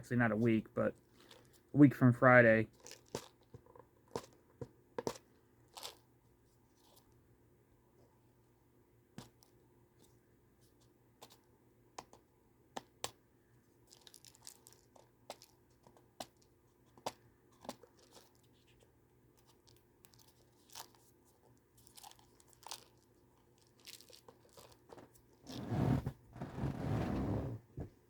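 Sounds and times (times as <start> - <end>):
food packaging rustling and tearing: 21.8 - 25.6.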